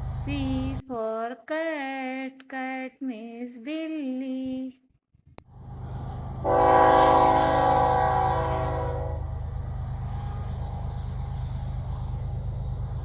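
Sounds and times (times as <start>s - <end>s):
running train rumble: 5.5s - 13.0s
train horn blast: 6.4s - 9.4s.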